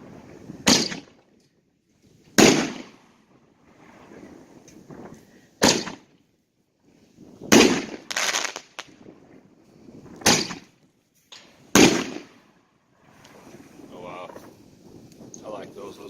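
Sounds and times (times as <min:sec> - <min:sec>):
firework shells bursting: 0:00.6 - 0:01.2, 0:07.4 - 0:09.1, 0:10.2 - 0:10.7.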